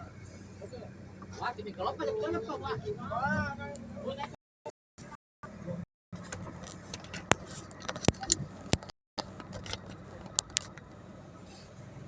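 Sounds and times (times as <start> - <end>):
sharp clicks and knocks: 6.2 - 11.0.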